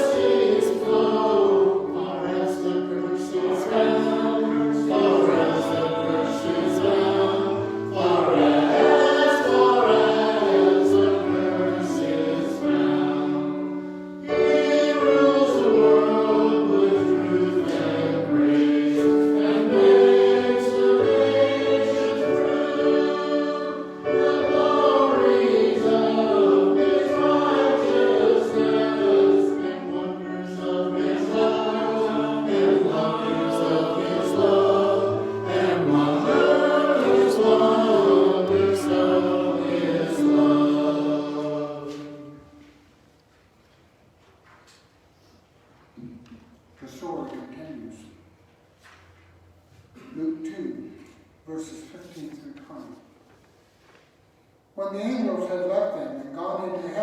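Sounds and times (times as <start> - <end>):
choir singing: 0.0 - 42.9.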